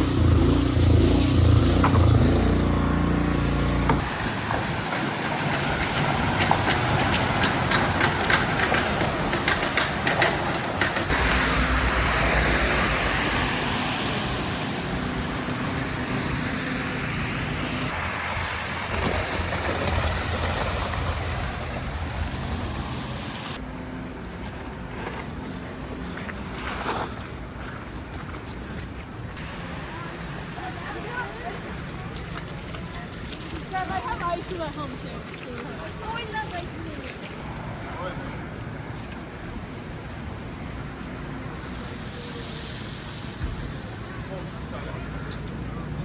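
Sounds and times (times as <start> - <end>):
tyres hissing through wet slush: 0.0 - 23.6, 29.4 - 37.5, 41.4 - 45.6
vehicle engine running: 0.0 - 24.0.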